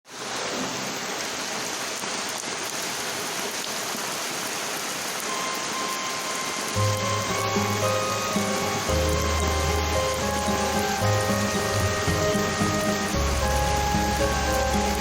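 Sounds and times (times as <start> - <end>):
rain falling: 0.0 - 15.0.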